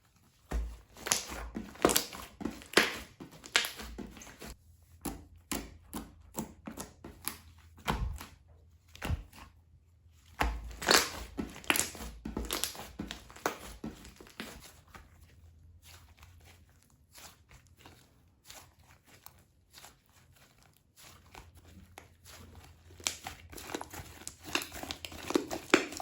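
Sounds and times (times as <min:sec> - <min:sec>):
slime crackling and popping: 0:00.9 - 0:03.9, 0:10.4 - 0:13.6, 0:23.0 - 0:26.0.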